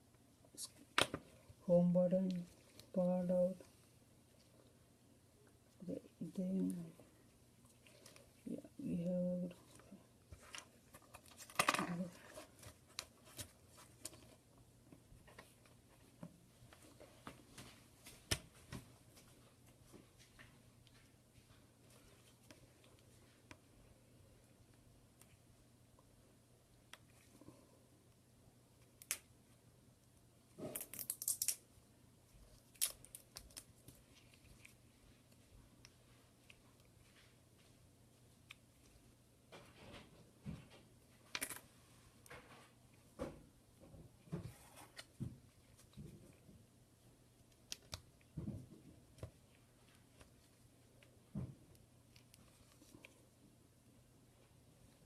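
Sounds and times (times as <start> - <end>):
rustling: 6.5 - 23.8.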